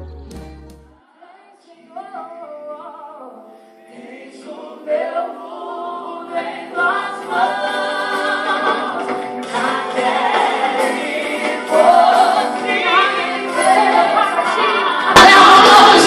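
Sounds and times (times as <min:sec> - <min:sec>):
band playing: 0:00.0 - 0:01.0, 0:08.6 - 0:16.0
woman singing lead vocal: 0:10.8 - 0:16.0
backing vocals: 0:11.8 - 0:16.0.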